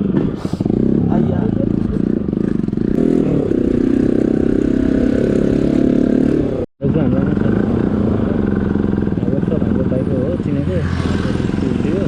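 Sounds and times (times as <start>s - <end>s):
voices: 0.0s - 2.3s, 6.4s - 12.0s
motorcycle engine running: 0.0s - 12.0s.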